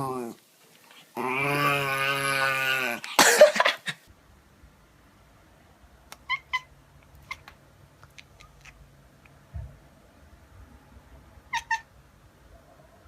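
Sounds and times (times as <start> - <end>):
cat chirping meows: 6.2 - 7.6, 11.5 - 11.9.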